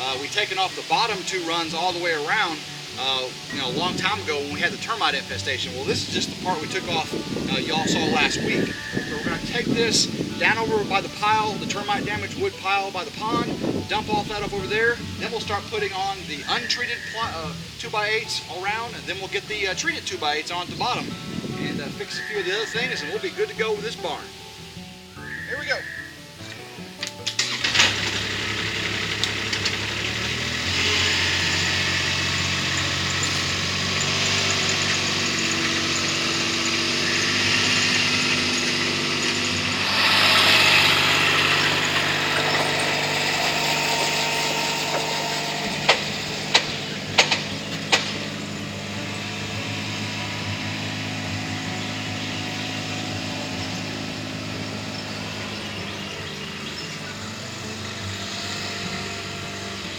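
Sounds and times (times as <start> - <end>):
vehicle engine running: 0.0 - 59.9
sharp knocks: 44.8 - 48.4.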